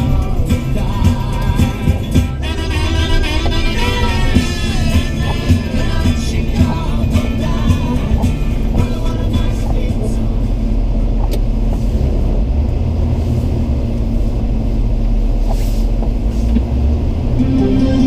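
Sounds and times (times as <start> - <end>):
car low rumble while driving: 0.0 - 18.0.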